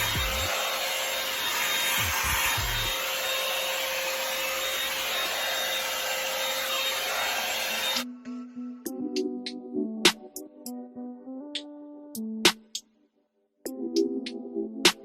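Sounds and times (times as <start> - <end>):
motor whine: 0.0 - 8.0.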